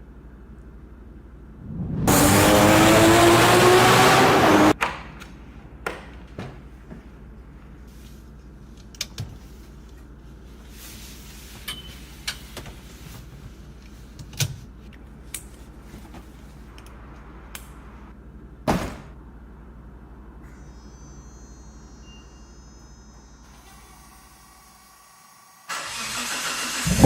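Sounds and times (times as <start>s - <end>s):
loud thud: 18.7s - 19.2s.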